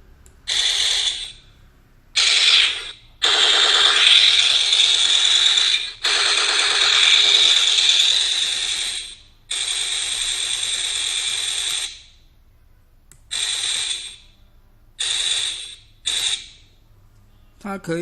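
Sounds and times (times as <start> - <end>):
electronic machine-gun bursts: 0.4 - 1.4, 2.2 - 12.1, 13.3 - 14.2, 15.0 - 16.6.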